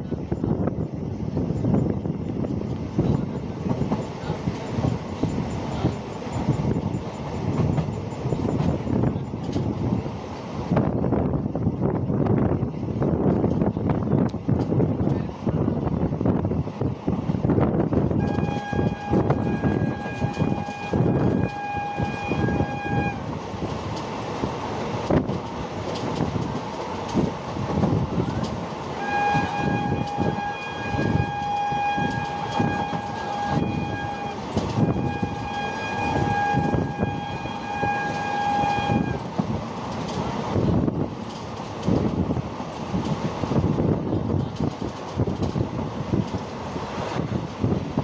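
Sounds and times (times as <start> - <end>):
train rumbling: 0.0 - 48.0
train horn blasts: 18.1 - 23.3, 28.9 - 39.3.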